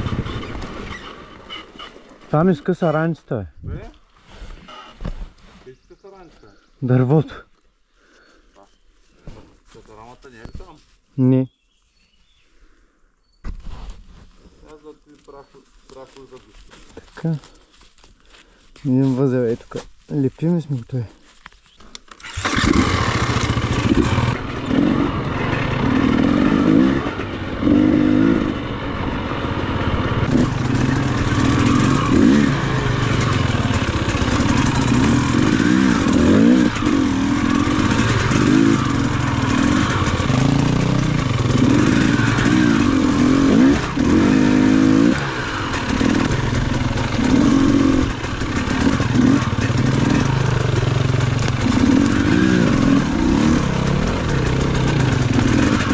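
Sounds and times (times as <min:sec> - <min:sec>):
dirt bike engine revving: 0:22.2 - 0:55.9.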